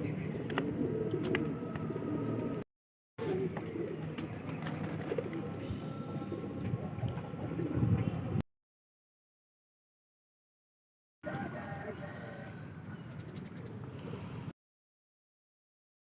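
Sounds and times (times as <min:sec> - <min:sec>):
pigeons cooing: 0:00.0 - 0:02.6, 0:03.2 - 0:08.3.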